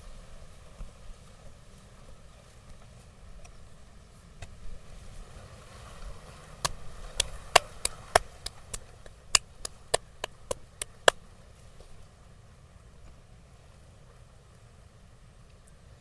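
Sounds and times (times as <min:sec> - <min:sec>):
percussive massage strikes: 0:06.6 - 0:11.2.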